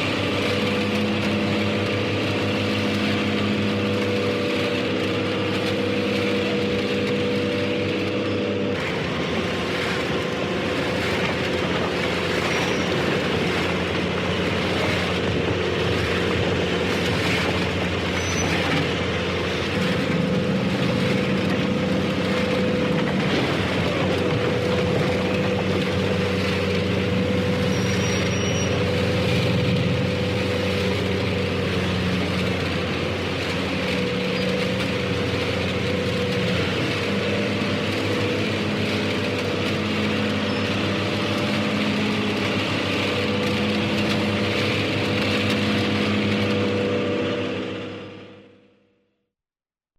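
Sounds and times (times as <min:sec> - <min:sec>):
harvester engine clattering: 0:00.0 - 0:48.1.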